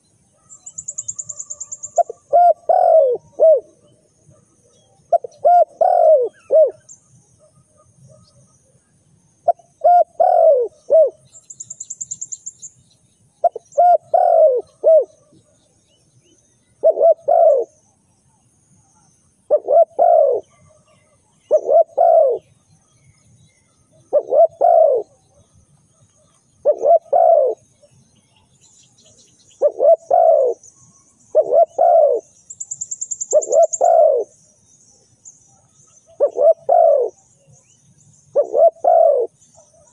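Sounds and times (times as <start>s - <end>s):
dove cooing: 1.2s - 3.9s, 5.1s - 6.9s, 9.4s - 11.2s, 13.4s - 15.4s, 16.8s - 17.8s, 19.5s - 22.5s, 24.0s - 25.2s, 26.6s - 27.6s, 29.6s - 30.6s, 31.3s - 32.3s, 33.3s - 34.3s, 36.1s - 37.2s, 38.3s - 39.9s.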